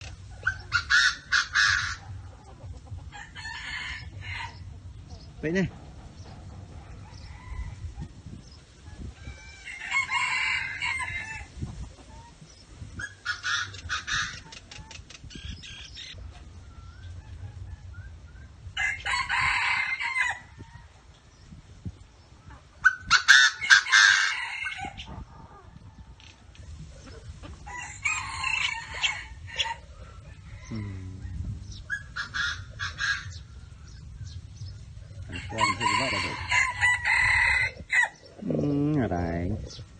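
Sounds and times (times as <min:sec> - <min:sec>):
rooster crowing: 0:06.9 - 0:08.1, 0:09.0 - 0:11.5, 0:18.8 - 0:20.7, 0:23.3 - 0:25.0, 0:27.6 - 0:33.1, 0:35.3 - 0:38.2.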